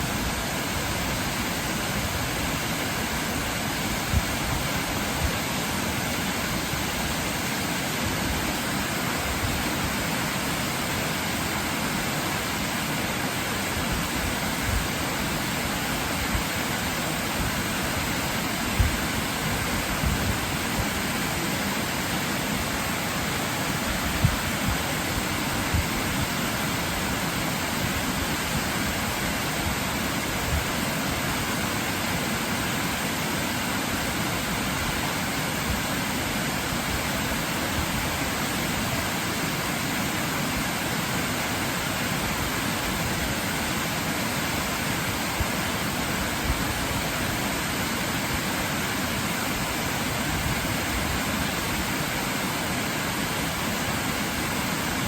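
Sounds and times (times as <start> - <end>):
waterfall rushing: 0.0 - 55.0.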